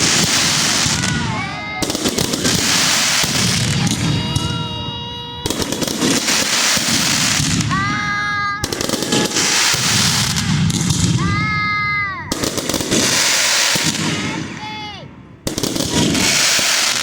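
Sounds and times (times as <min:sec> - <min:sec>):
firework whistle: 0:00.0 - 0:07.9, 0:08.6 - 0:11.4
fireworks crackling bangs: 0:00.0 - 0:17.0.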